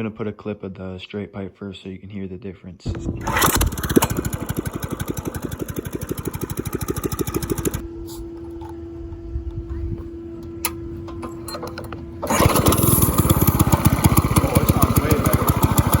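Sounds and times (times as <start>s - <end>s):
go-kart engine idling: 2.9s - 7.8s, 11.2s - 16.0s
go-kart engine puttering: 2.9s - 7.8s, 10.6s - 16.0s
steady hum: 2.9s - 16.0s.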